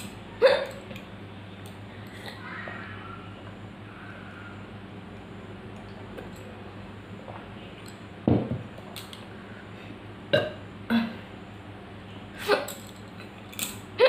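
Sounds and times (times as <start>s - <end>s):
woman burping and hiccuping: 0.4s - 0.8s, 10.3s - 11.2s.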